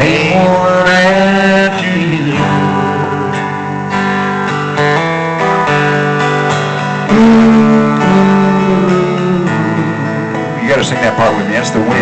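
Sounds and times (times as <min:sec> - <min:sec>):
person singing: 0:00.0 - 0:03.9, 0:07.0 - 0:12.0
guitar strumming chords: 0:00.0 - 0:12.0.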